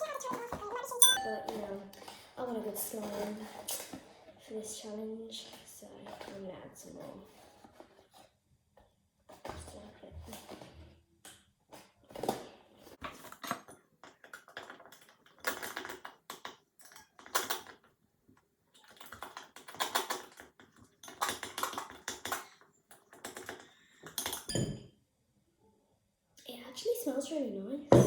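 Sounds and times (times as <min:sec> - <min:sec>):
spoon clinking on bowl: 0:01.0 - 0:01.8, 0:24.2 - 0:24.9
spoon stirring slime in a bowl: 0:01.0 - 0:02.2.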